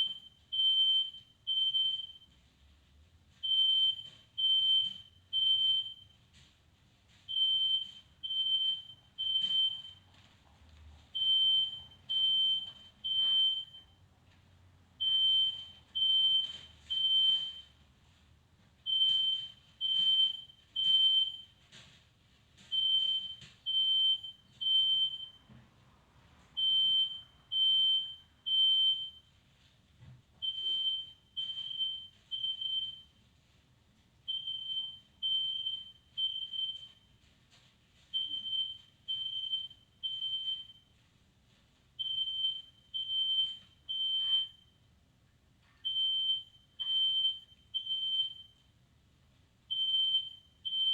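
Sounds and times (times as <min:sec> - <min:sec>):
smoke alarm beeping: 0:00.0 - 0:02.4, 0:03.4 - 0:06.3, 0:07.2 - 0:10.1, 0:11.2 - 0:14.0, 0:15.0 - 0:17.8, 0:18.8 - 0:21.6, 0:22.6 - 0:25.5, 0:26.6 - 0:29.4, 0:30.4 - 0:33.2, 0:34.3 - 0:37.2, 0:38.0 - 0:41.0, 0:42.0 - 0:44.9, 0:45.8 - 0:48.8, 0:49.7 - 0:50.9.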